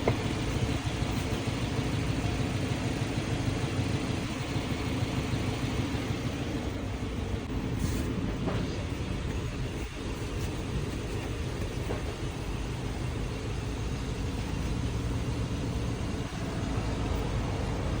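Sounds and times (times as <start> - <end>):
road and tyre noise: 0.0 - 18.0.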